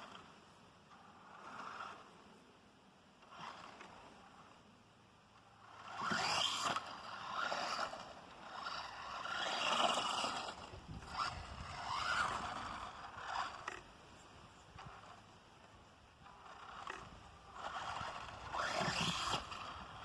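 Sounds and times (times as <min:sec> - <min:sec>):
rc truck motor whining: 0:00.0 - 0:02.5, 0:03.1 - 0:20.0.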